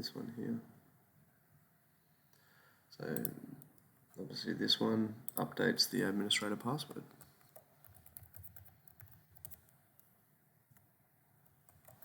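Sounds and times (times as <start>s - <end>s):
computer keyboard keystrokes: 7.2s - 10.1s, 11.7s - 12.0s.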